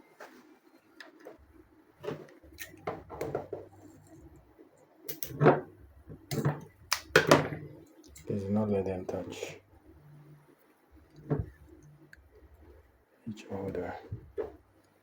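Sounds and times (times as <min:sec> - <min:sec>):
battery cells and wires clicking: 0:04.0 - 0:05.4.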